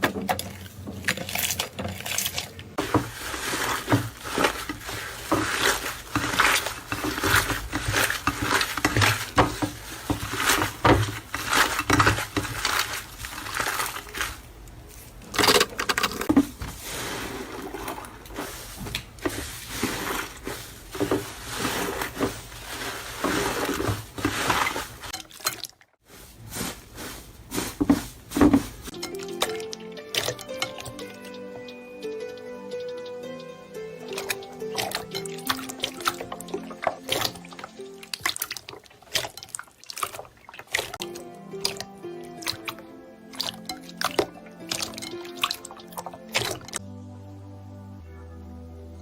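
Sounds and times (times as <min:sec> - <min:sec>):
slime clicking and crackling: 0:34.2 - 0:42.7.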